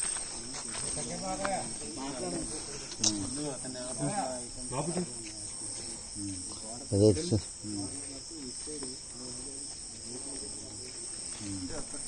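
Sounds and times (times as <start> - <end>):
high insect chorus: 0.0 - 12.0
people talking: 0.0 - 12.0.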